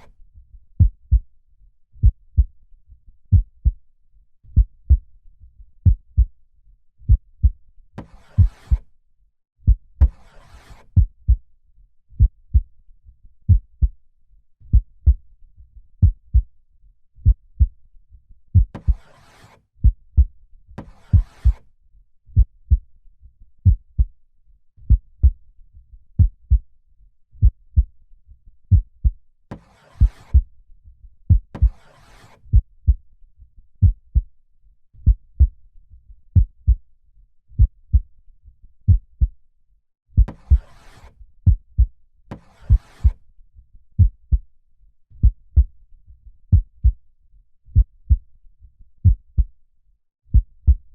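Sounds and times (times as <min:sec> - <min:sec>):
heartbeat thumps: 0:00.8 - 0:01.2, 0:02.0 - 0:02.5, 0:03.3 - 0:03.8, 0:04.6 - 0:05.0, 0:12.2 - 0:12.7, 0:13.5 - 0:13.9, 0:14.7 - 0:15.2, 0:16.0 - 0:16.5, 0:22.4 - 0:22.8, 0:24.9 - 0:25.4, 0:26.2 - 0:26.6, 0:33.8 - 0:34.2, 0:35.0 - 0:35.5, 0:36.4 - 0:36.8, 0:37.6 - 0:38.0, 0:38.9 - 0:39.3, 0:40.2 - 0:40.6, 0:45.2 - 0:45.7, 0:46.5 - 0:47.0, 0:47.8 - 0:48.2, 0:49.0 - 0:49.5, 0:50.3 - 0:50.9.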